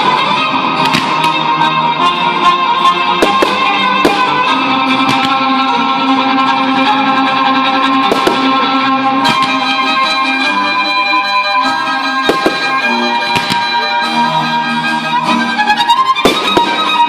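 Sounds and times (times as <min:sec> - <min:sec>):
music playing: 0:00.0 - 0:17.0
firework bangs: 0:03.2 - 0:05.4, 0:08.0 - 0:09.7, 0:12.3 - 0:13.6, 0:16.2 - 0:17.0.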